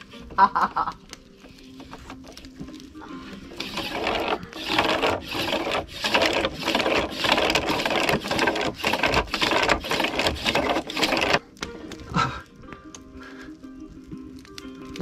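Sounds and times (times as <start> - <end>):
wood rasping on wood: 3.5 - 11.4.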